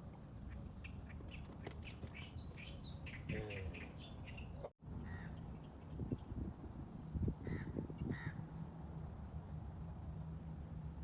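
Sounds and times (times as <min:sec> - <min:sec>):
small birds chirping: 0:00.4 - 0:06.4.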